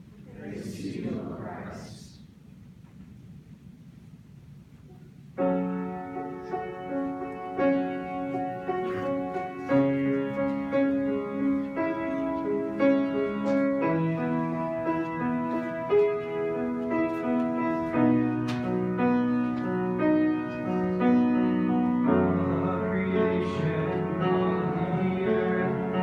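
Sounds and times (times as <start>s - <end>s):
piano playing slow chords: 5.3s - 26.0s.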